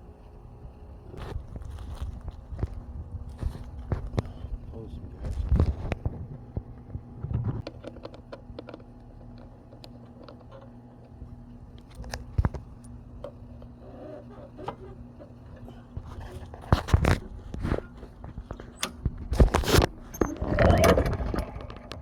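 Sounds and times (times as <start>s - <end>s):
low steady hum: 0.0s - 22.0s
small clicks taps and scrapes: 5.2s - 11.2s.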